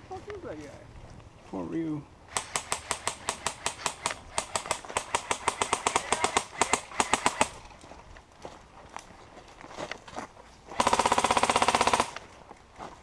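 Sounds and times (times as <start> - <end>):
airsoft gun firing: 2.3 - 7.6, 10.8 - 12.2.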